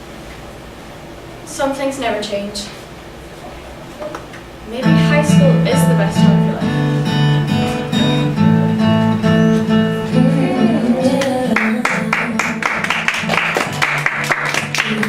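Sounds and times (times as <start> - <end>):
acoustic guitar strumming: 4.8 - 15.0.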